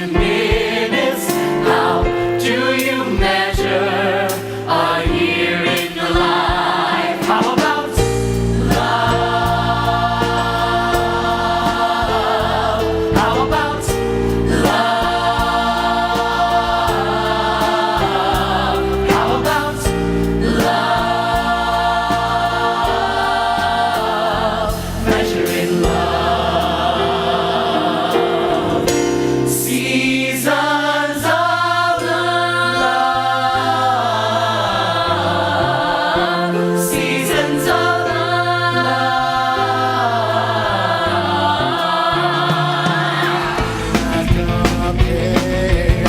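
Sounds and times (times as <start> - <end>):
ensemble singing in chorus: 0.0 - 46.0
instrumental accompaniment: 0.0 - 46.0.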